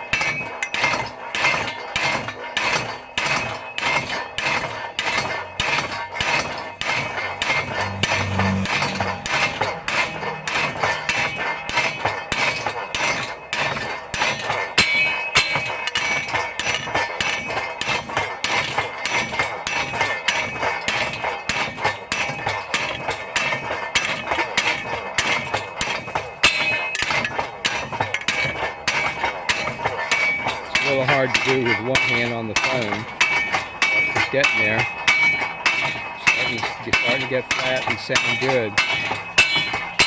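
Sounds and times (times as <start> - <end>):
power hammer pounding metal: 0.0 - 40.0.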